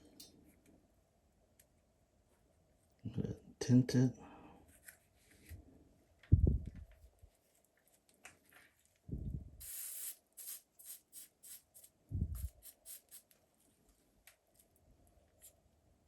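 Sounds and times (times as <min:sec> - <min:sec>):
low bumps: 0:06.3 - 0:06.9
short hiss: 0:09.6 - 0:11.6.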